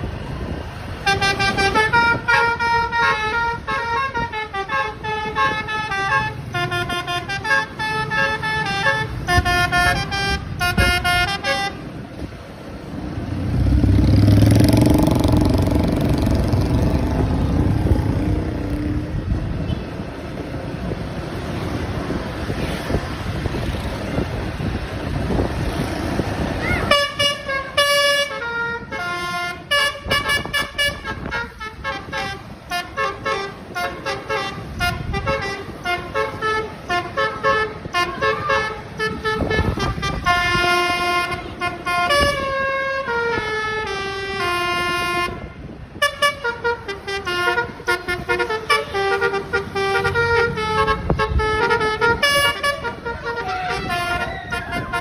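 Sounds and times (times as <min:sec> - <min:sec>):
engine rumble: 0:00.0 - 0:55.0
wind: 0:00.0 - 0:55.0
multi-tone bus horn tune: 0:00.8 - 0:12.3, 0:26.8 - 0:55.0.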